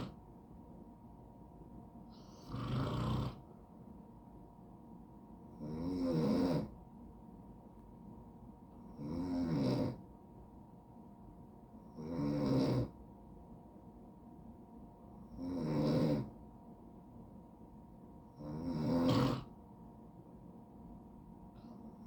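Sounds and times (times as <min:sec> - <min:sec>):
man snoring: 0:02.3 - 0:03.4, 0:05.6 - 0:06.7, 0:09.0 - 0:10.0, 0:12.0 - 0:12.9, 0:15.4 - 0:16.3, 0:18.4 - 0:19.5.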